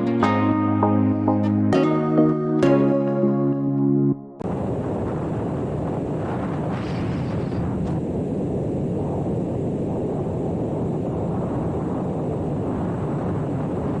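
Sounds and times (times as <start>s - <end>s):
motorcycle engine and road noise: 4.4s - 14.0s
wind buffeting microphone: 4.4s - 14.0s.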